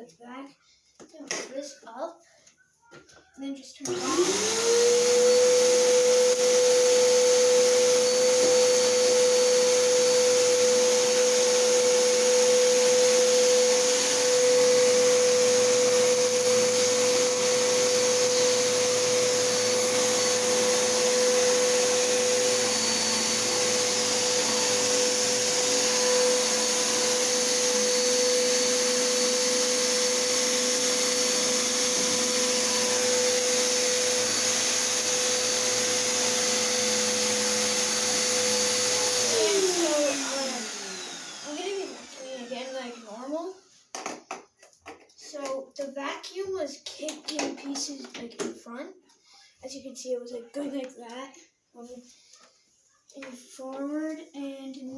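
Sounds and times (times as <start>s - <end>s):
vacuum cleaner running: 3.8s - 43.7s.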